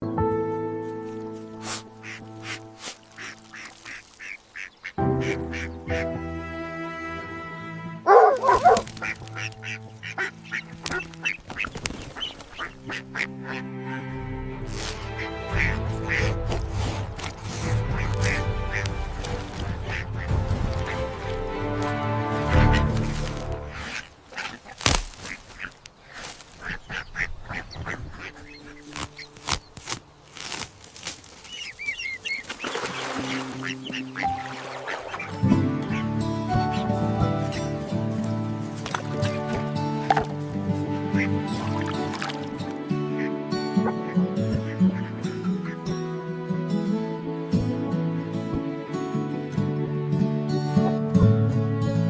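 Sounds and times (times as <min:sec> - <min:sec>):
soft background music: 0:00.0 - 0:24.1, 0:32.1 - 0:52.0
rustles: 0:01.0 - 0:04.7, 0:21.8 - 0:33.0
duck quacking: 0:01.6 - 0:06.2, 0:08.1 - 0:14.1, 0:15.1 - 0:29.3, 0:31.5 - 0:37.7, 0:41.0 - 0:42.4, 0:43.0 - 0:45.8.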